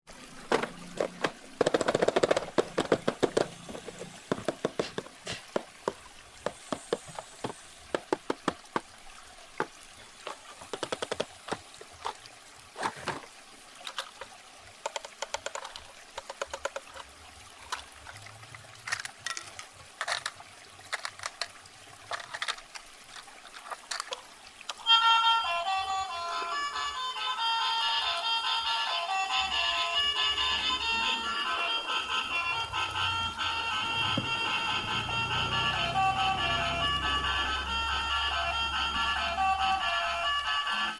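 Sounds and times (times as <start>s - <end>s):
running water: 0.1s - 40.9s
toy being unboxed and handled: 0.5s - 8.8s, 10.3s - 12.2s, 13.9s - 14.3s, 14.9s - 25.0s.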